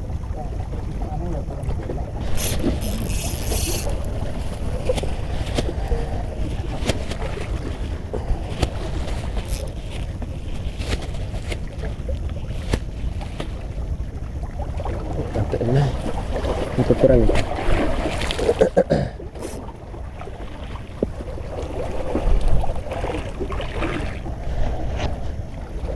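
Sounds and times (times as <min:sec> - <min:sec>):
wind rumbling on microphone: 0:00.0 - 0:18.6, 0:19.2 - 0:25.9
short hiss: 0:02.3 - 0:03.9.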